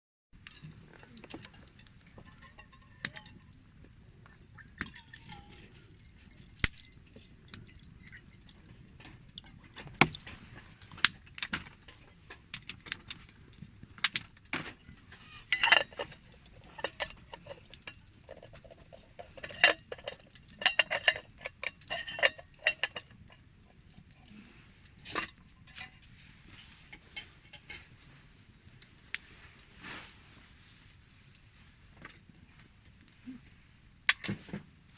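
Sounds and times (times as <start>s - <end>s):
metal cookware clinking: 0.4s - 3.8s, 4.4s - 7.1s, 14.6s - 24.1s, 25.0s - 28.0s.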